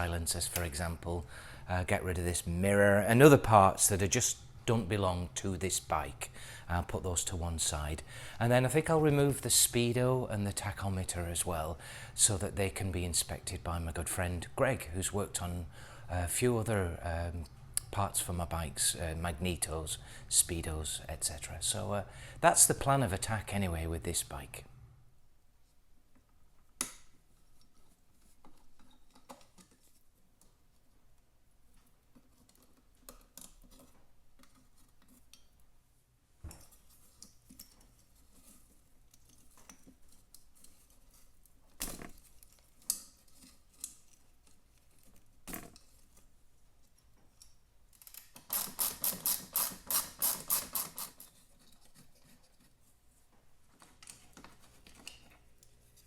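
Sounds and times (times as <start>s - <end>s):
ratchet strokes: 48.4s - 51.3s.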